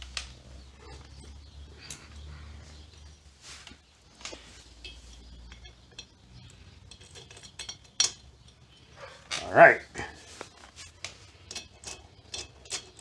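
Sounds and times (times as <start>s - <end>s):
metallic clinks of engine parts: 4.1s - 13.0s.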